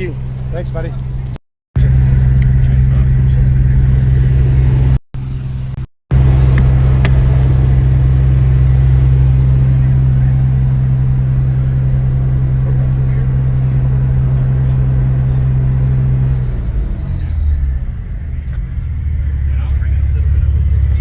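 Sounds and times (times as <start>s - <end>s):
subwoofer playing steady bass tone: 1.8s - 16.9s.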